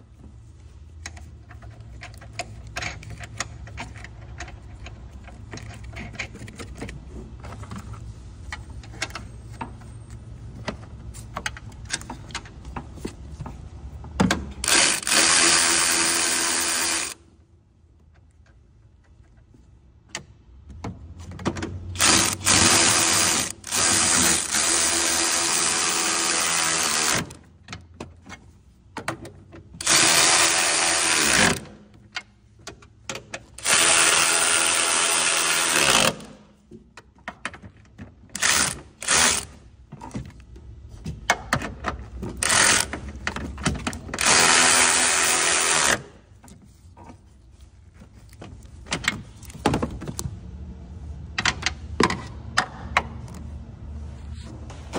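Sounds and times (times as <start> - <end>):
clatter of tools and parts: 1.0 - 17.2
handheld power tool motor: 14.6 - 17.2, 22.0 - 27.4, 29.8 - 31.8, 33.6 - 36.4, 38.4 - 39.6, 42.4 - 43.2, 44.2 - 46.1.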